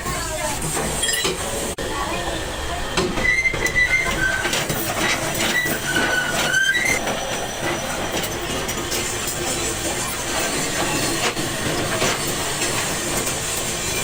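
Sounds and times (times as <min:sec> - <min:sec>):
metal working din: 0:00.0 - 0:14.0
high metallic squeals: 0:03.2 - 0:09.6.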